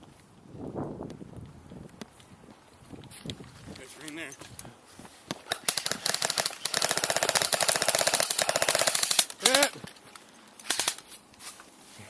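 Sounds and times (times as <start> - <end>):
airsoft gun firing bursts: 5.5 - 9.8, 10.6 - 11.0
person shouting: 9.4 - 9.8.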